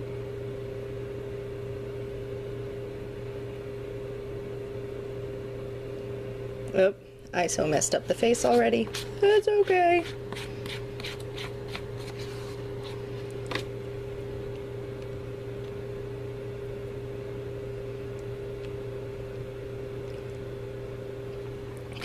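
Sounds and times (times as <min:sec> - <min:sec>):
low hum: 0:11.9 - 0:22.0.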